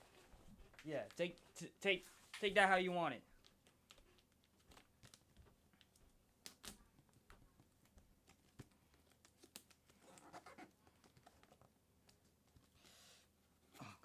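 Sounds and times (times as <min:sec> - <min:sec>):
light clicks and scratches: 0:03.3 - 0:13.3.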